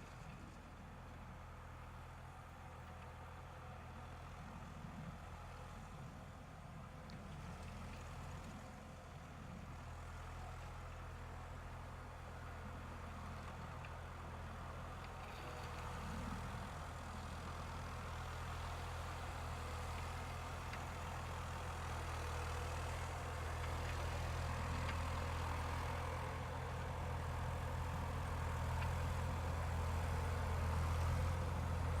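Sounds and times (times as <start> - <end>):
diesel engine running: 15.6 - 32.0.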